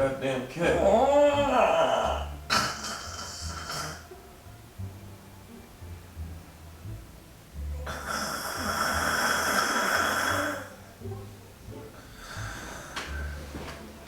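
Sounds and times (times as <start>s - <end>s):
woman fake snoring: 1.5s - 4.1s, 7.9s - 10.7s.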